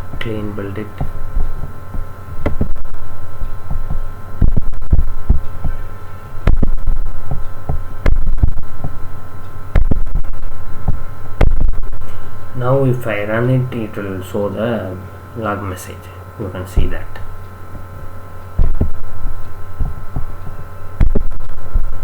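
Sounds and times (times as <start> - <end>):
low thuds: 0.0 - 12.1, 17.7 - 22.0
electrical hum: 0.0 - 22.0.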